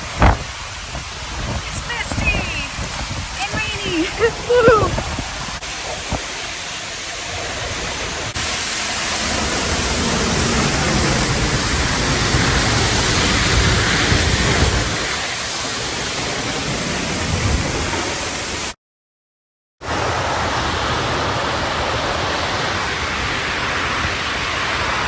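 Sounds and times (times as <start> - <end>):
waterfall rushing: 0.0 - 18.8, 19.8 - 25.0.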